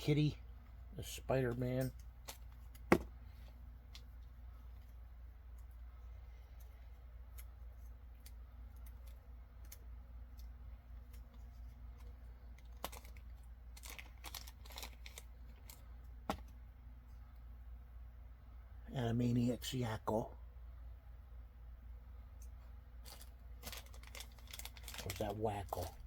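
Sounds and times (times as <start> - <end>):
low steady hum: 0.0 - 26.0
packaging rustling: 12.0 - 15.8, 23.0 - 26.0.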